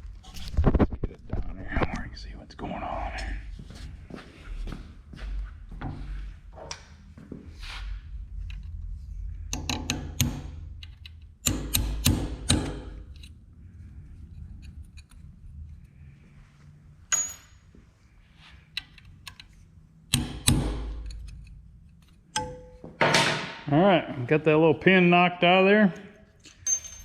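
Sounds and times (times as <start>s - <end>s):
hammer striking metal punch: 11.4s - 13.0s, 20.1s - 21.0s, 22.4s - 23.6s.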